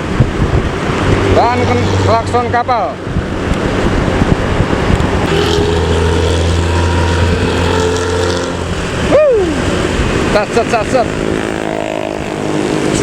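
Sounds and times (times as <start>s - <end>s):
bus diesel engine deep drone: 2.2s - 10.3s.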